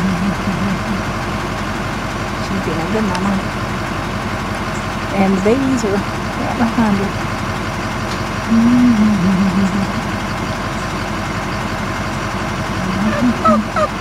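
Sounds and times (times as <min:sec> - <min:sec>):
murmured voice: 0:00.0 - 0:01.2, 0:08.5 - 0:10.4, 0:12.8 - 0:13.8
vehicle engine idling: 0:00.0 - 0:14.0.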